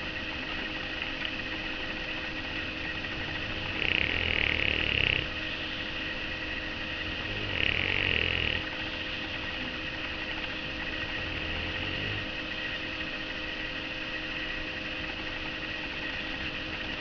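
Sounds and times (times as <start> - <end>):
dog snoring: 3.1 - 5.4, 7.0 - 8.9, 10.8 - 12.7.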